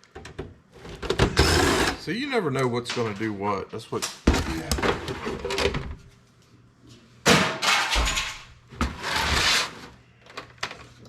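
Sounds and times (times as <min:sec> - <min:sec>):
parts clattering and scraping: 0:07.3 - 0:11.0.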